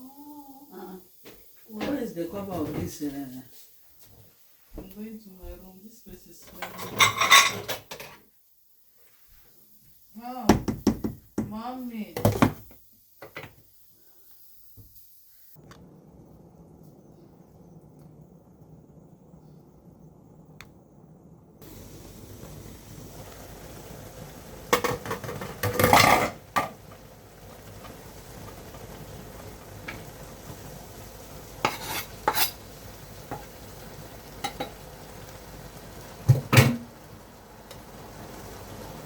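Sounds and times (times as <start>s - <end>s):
steady low hiss: 0.0s - 39.0s
utensils clinking against dishes: 6.5s - 8.2s.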